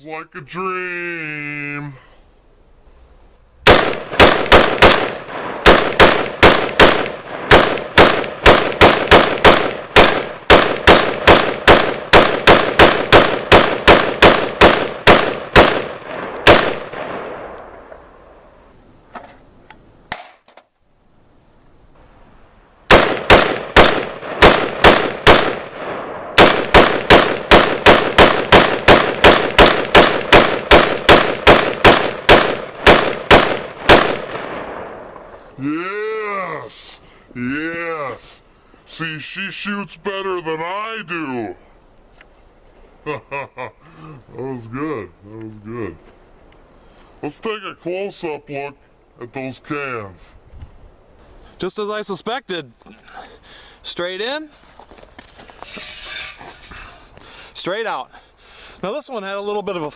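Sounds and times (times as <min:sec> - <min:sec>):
rapid rifle gunshots: 0:03.6 - 0:17.2, 0:22.9 - 0:34.9.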